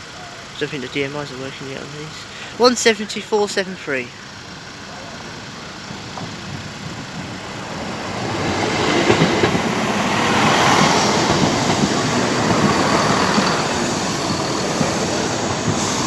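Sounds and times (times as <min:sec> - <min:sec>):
train passing: 0:00.0 - 0:16.0
train wheels clicking and knocking: 0:04.6 - 0:16.0.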